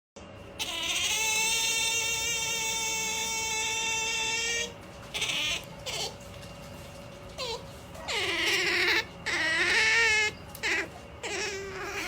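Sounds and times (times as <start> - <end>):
otter whining call: 7.4 - 12.0.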